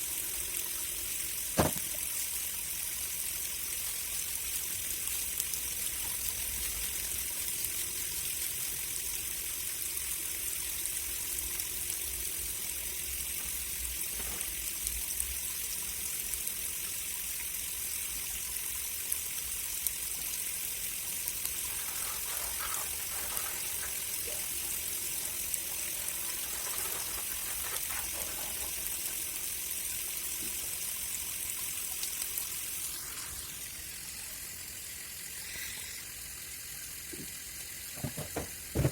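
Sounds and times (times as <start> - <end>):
water running from tap: 0.0 - 38.9
faint knocks: 38.0 - 38.9.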